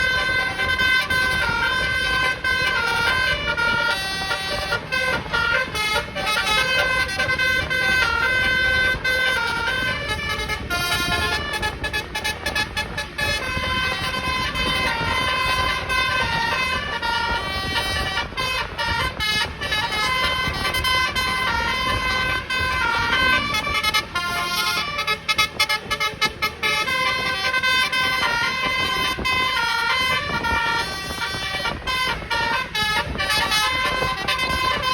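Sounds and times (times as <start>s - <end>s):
bus multi-tone horn tune: 0.0s - 34.9s.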